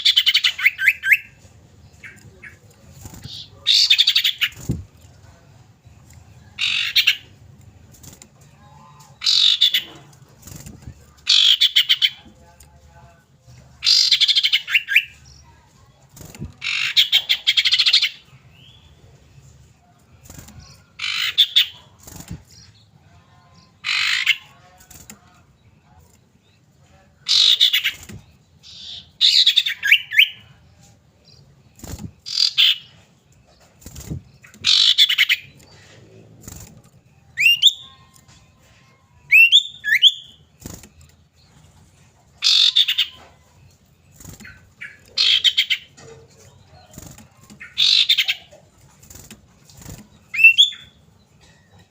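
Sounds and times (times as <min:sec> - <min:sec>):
bird chattering call: 0:42.4 - 0:43.2, 0:44.4 - 0:45.9, 0:47.6 - 0:48.6.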